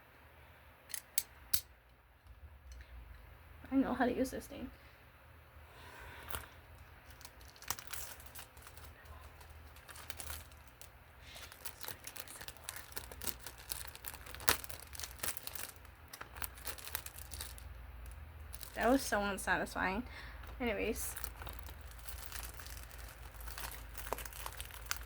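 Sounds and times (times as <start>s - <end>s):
plastic wrapping crinkling: 6.2s - 25.0s
plastic wrapping snapping: 6.3s - 19.2s, 20.4s - 25.0s.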